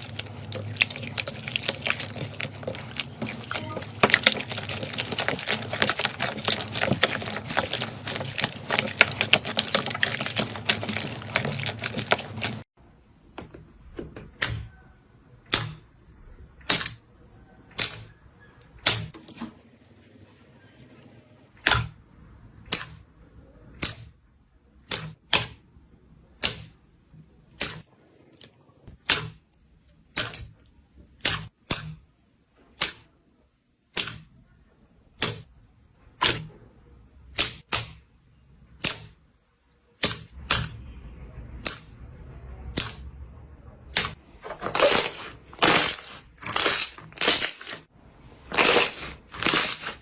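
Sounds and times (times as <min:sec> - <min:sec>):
slime popping and crackling: 0:00.0 - 0:12.7, 0:43.9 - 0:50.0.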